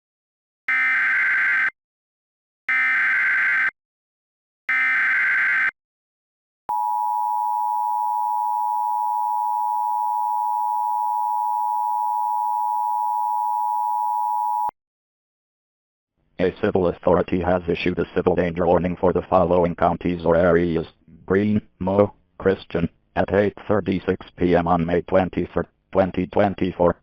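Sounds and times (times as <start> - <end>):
steady attention tone: 6.7 - 14.7.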